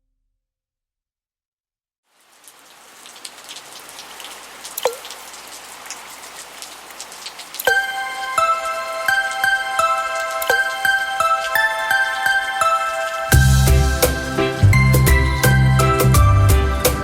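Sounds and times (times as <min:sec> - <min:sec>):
steady rain: 0:02.1 - 0:17.0
dripping water ticks: 0:02.2 - 0:16.7
plinking water drop: 0:04.8 - 0:05.2, 0:07.6 - 0:13.5.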